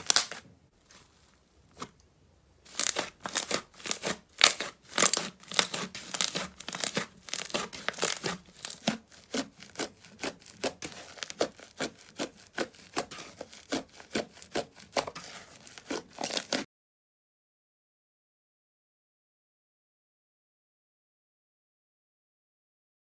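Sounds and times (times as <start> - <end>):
slime squelching by hand: 0.0 - 2.0, 2.7 - 16.6.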